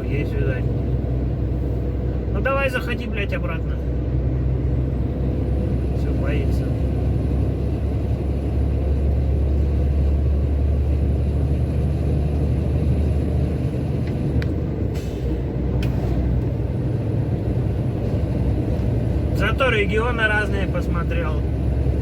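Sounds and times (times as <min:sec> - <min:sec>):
truck engine and road noise: 0:00.0 - 0:22.0.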